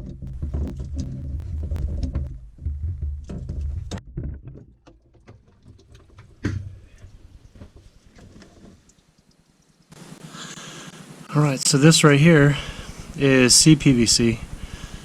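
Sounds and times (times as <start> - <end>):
scattered clicks: 0.0 - 2.3.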